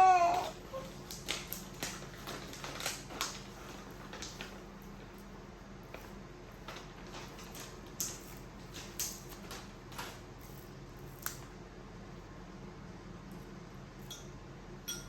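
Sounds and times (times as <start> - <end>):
baby eating smacks and clicks: 0.0 - 5.2.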